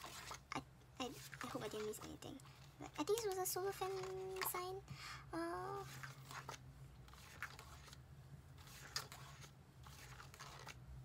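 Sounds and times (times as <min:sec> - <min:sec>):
paper rustling: 0:08.6 - 0:10.8.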